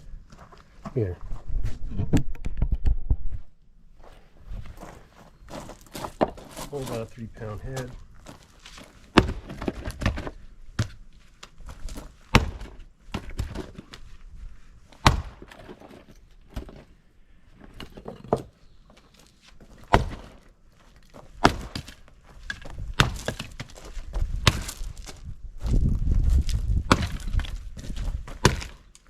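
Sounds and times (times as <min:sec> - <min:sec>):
axe splitting firewood: 0:09.0 - 0:11.0, 0:11.8 - 0:14.1, 0:14.9 - 0:16.9, 0:17.6 - 0:18.6, 0:19.5 - 0:20.5, 0:21.1 - 0:25.0, 0:26.5 - 0:29.0.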